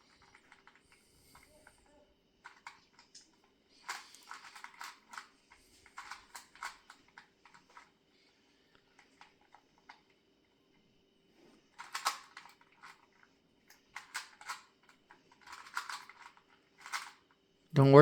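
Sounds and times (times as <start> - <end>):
plastic puzzle cube clicks: 2.4 - 7.9, 11.8 - 13.1, 13.7 - 17.2.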